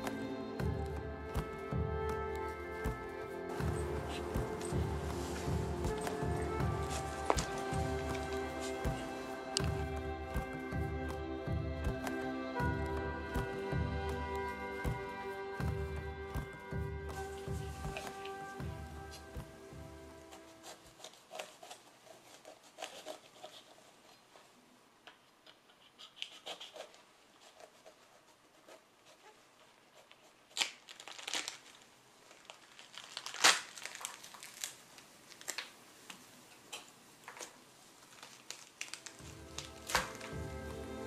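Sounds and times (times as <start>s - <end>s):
paper crinkling and rustling: 2.4s - 10.5s, 17.1s - 24.6s, 26.4s - 41.0s.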